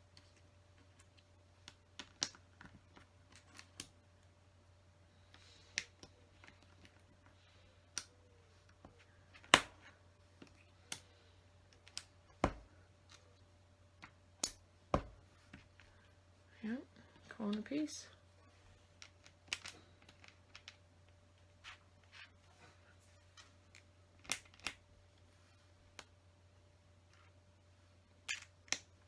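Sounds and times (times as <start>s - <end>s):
faint steady hum: 0.0s - 29.0s
plastic pieces clicking: 19.0s - 20.8s.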